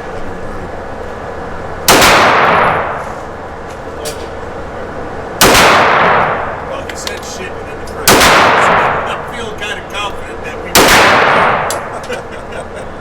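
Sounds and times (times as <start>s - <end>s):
pistol shots: 1.9s - 3.0s, 5.4s - 7.3s, 8.0s - 9.3s, 10.7s - 12.1s.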